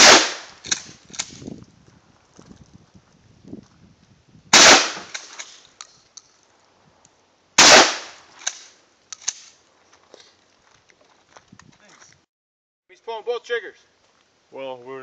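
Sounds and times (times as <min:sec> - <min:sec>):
shotgun shots: 0:00.0 - 0:01.4, 0:04.5 - 0:05.6, 0:07.6 - 0:08.6
sharp clicks: 0:08.4 - 0:09.5.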